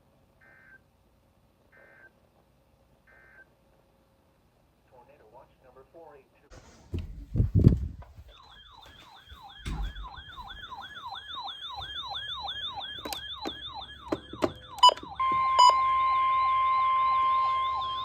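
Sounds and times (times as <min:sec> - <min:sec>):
heavy thump: 0:06.6 - 0:11.0
electronic siren yelping: 0:08.2 - 0:18.0.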